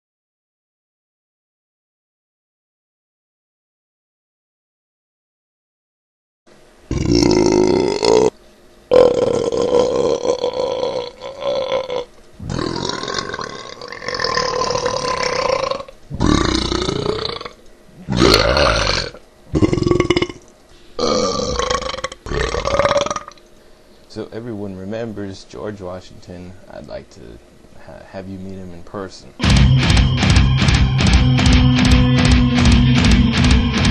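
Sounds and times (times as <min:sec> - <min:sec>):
person burping: 0:06.9 - 0:08.3, 0:08.9 - 0:20.4, 0:21.0 - 0:23.4.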